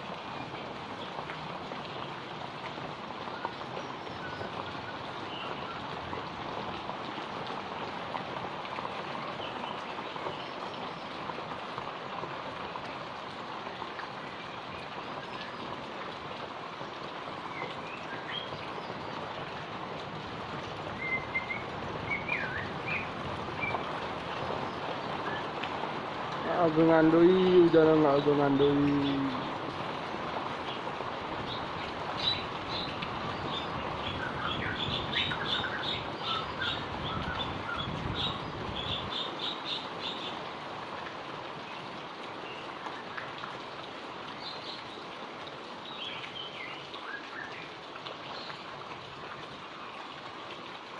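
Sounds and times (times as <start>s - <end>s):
heavy rain falling: 0.0s - 50.9s.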